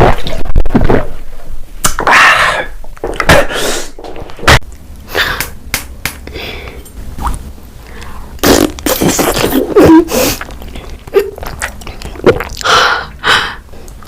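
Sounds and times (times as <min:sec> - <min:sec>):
person eating with crunches: 0:06.6 - 0:12.8.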